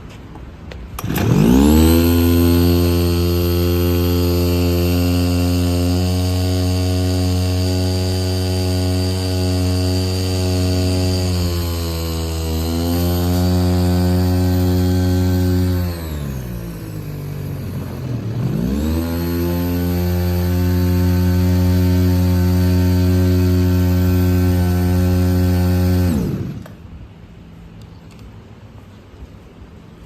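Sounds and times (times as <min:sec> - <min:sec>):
small engine revving and idling: 0:00.9 - 0:26.9.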